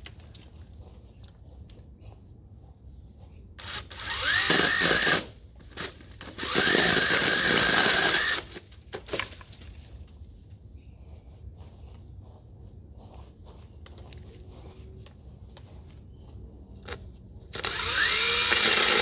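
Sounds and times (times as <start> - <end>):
electric chainsaw motor whine: 3.6 - 5.3, 6.2 - 8.6, 17.5 - 19.0.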